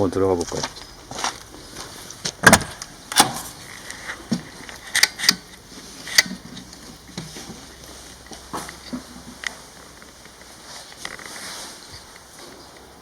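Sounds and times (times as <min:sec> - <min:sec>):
door handle and latch clicks: 0:02.4 - 0:03.6.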